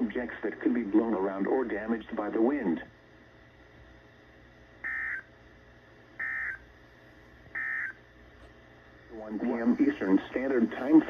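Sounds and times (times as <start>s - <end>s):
warbling data tone bursts: 4.8s - 5.3s, 6.2s - 6.6s, 7.6s - 8.0s.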